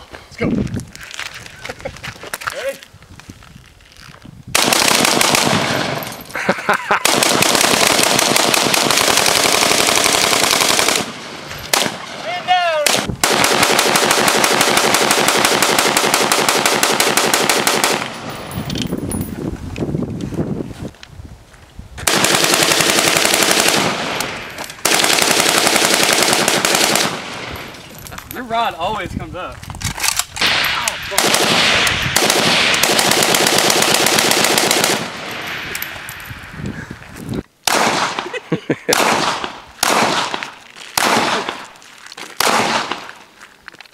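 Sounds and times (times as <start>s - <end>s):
rapid rifle shots: 4.6s - 6.1s, 7.0s - 12.2s, 12.8s - 18.3s, 22.0s - 27.5s, 30.4s - 35.6s, 37.7s - 38.3s, 38.9s - 41.6s, 42.4s - 43.1s
gunshot echoes: 30.4s - 36.0s, 37.7s - 41.6s, 42.4s - 43.1s.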